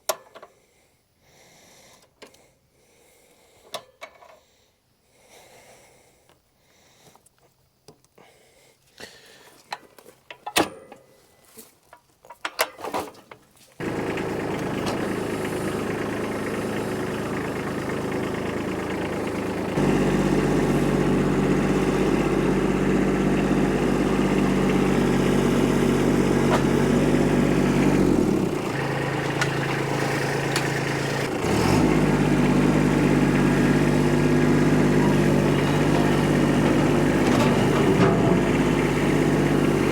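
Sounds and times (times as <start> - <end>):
engine running and revving: 13.8 - 39.9.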